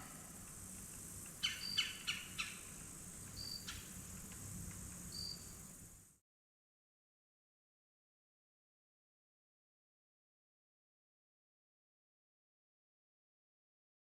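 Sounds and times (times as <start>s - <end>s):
high insect hiss: 0.0s - 6.2s.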